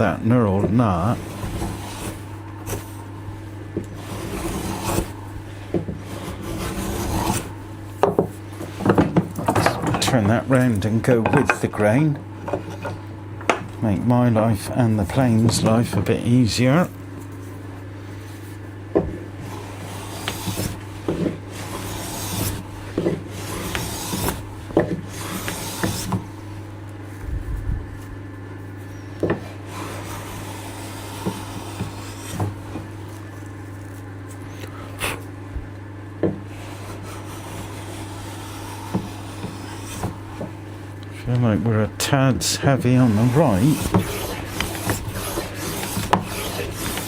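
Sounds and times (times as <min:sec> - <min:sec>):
steady low hum: 0:00.0 - 0:47.0
hand plane rasping on wood: 0:00.7 - 0:02.9, 0:03.9 - 0:05.3, 0:06.0 - 0:07.6, 0:19.4 - 0:26.4, 0:29.2 - 0:33.4, 0:36.5 - 0:40.6, 0:42.6 - 0:47.0
plane knocking: 0:18.9 - 0:26.4, 0:29.1 - 0:33.0, 0:35.5 - 0:40.6, 0:42.9 - 0:47.0.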